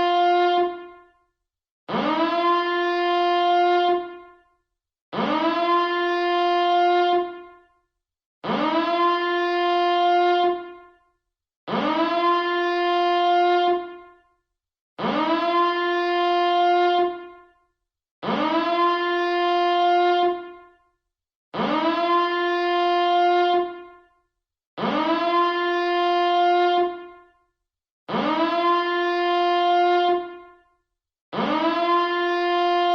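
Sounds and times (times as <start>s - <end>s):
alarm siren blasts: 0.0s - 1.2s, 1.9s - 4.5s, 5.1s - 7.8s, 8.4s - 11.0s, 11.7s - 14.3s, 15.0s - 17.6s, 18.2s - 20.8s, 21.6s - 24.1s, 24.8s - 27.4s, 28.1s - 30.7s, 31.3s - 32.9s.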